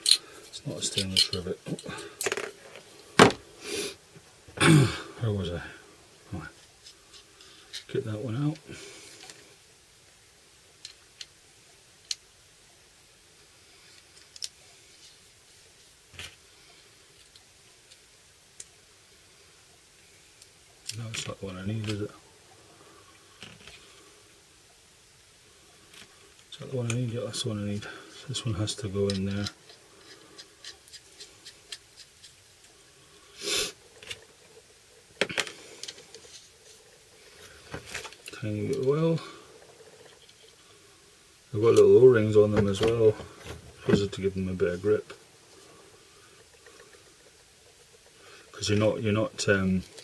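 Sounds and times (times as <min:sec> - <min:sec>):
small metal parts clicking: 0:00.0 - 0:02.6, 0:14.0 - 0:14.6
short hiss: 0:03.1 - 0:04.0, 0:33.0 - 0:33.8.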